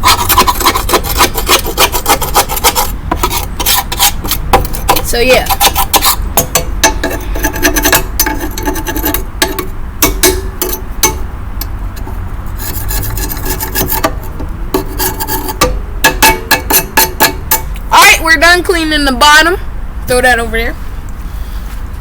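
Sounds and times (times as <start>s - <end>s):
scraping mower deck: 0.0s - 9.8s, 12.0s - 18.2s.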